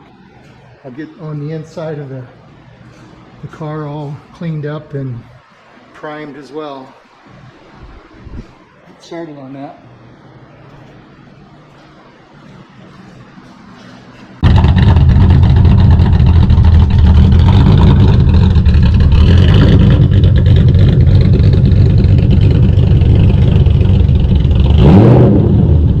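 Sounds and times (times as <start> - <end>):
car engine running and revving: 14.4 - 26.0.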